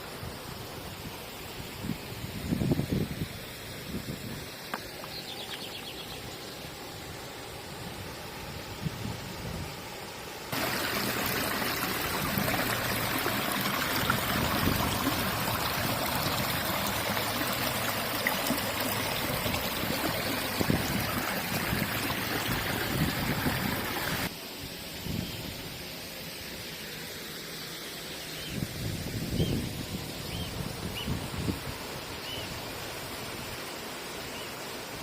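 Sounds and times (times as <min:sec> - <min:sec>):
water rushing over waterfall: 0:10.5 - 0:24.3.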